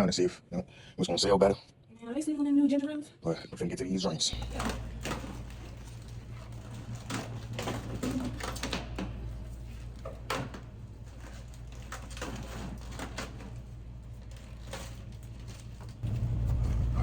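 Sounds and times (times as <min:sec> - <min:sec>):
steady low hum: 0:04.3 - 0:17.0
snack packs clicking and knocking: 0:04.4 - 0:16.1.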